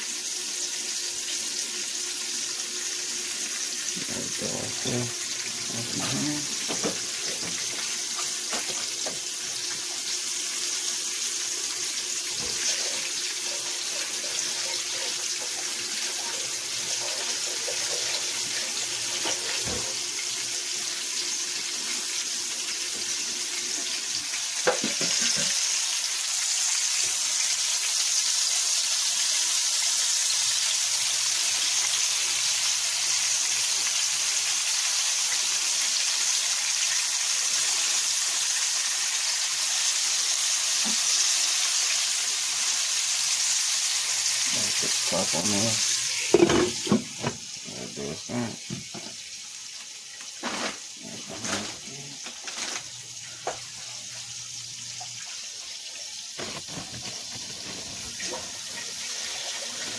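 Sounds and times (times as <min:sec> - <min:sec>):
chicken liver sizzling in oil: 0:00.0 - 0:59.9
knock: 0:06.6 - 0:07.6.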